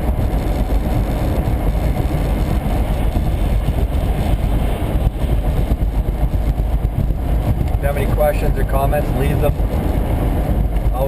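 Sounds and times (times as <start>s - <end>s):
car driving on wet road: 0.0s - 11.0s.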